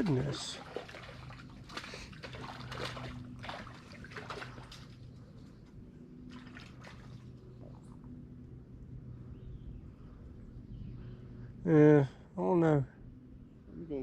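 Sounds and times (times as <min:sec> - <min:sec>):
water splashing and sloshing: 0:00.0 - 0:08.4
faint low hum: 0:00.0 - 0:14.0.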